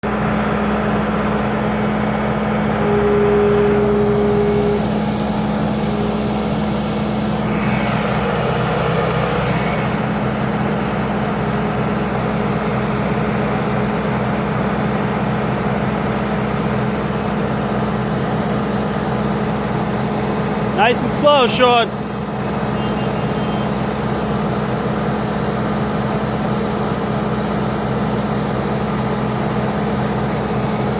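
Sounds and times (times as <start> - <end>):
vehicle engine humming: 0.6 - 15.4, 20.2 - 24.4
brief higher tone: 2.8 - 10.2, 22.7 - 23.8.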